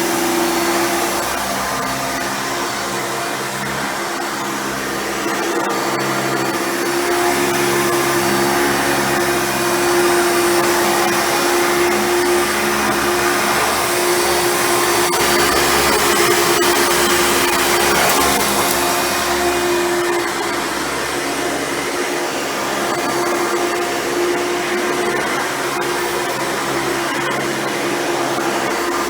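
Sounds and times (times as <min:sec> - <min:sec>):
vacuum cleaner running: 0:00.0 - 0:29.0.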